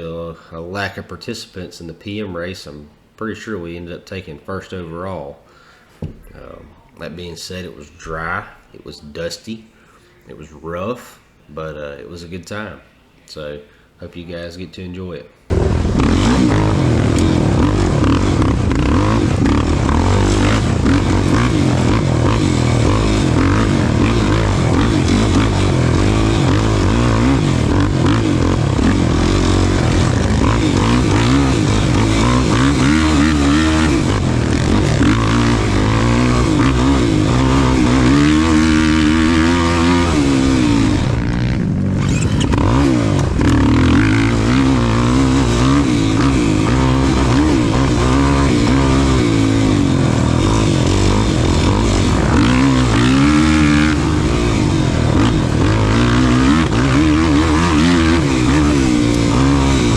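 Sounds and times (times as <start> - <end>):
racing engine revving: 15.5 - 59.9.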